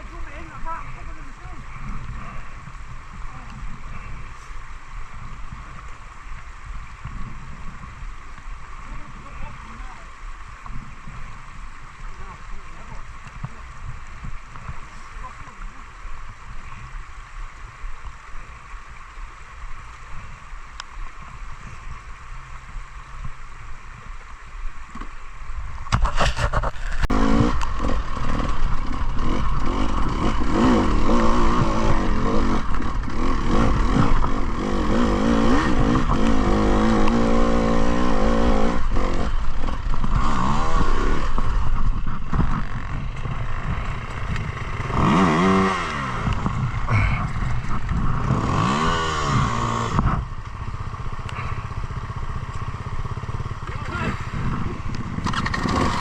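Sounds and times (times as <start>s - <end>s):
motorcycle engine revving: 26.0s - 56.0s.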